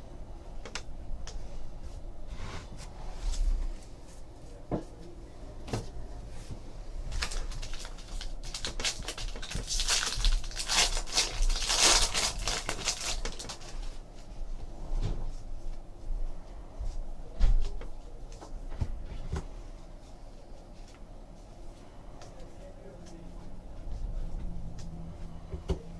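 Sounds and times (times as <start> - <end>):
foil wrapper crinkling: 7.1 - 13.9.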